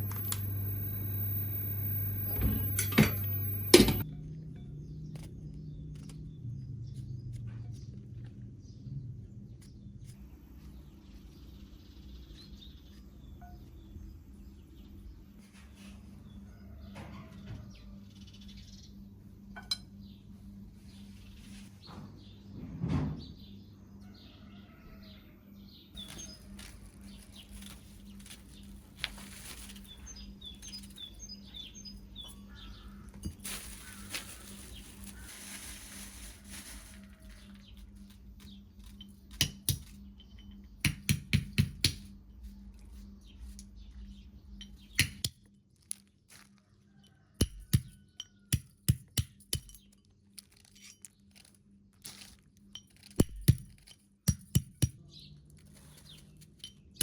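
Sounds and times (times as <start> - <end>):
low steady hum: 0.0 - 16.4
dishes and glassware clinking: 2.2 - 4.0
birds chirping: 29.6 - 35.6.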